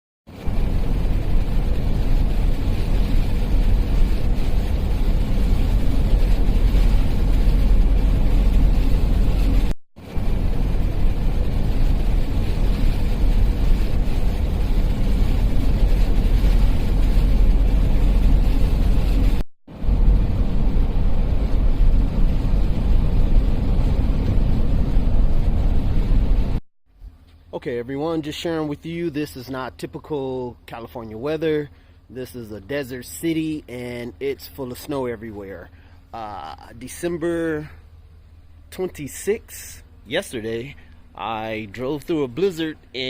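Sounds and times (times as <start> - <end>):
car road and engine noise: 0.3 - 27.6.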